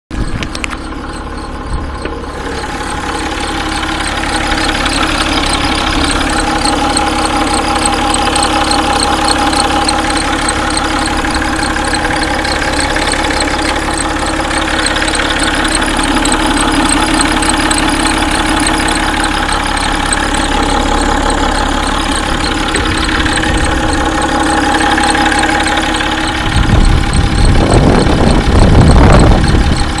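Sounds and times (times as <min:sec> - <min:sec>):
diesel engine running: 0:00.1 - 0:30.0
water pump whine: 0:00.2 - 0:30.0.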